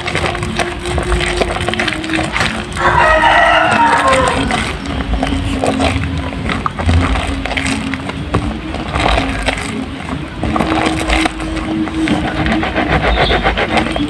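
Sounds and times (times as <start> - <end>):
steady low hum: 0.0 - 14.0
wet soap squelching by hand: 0.0 - 14.0.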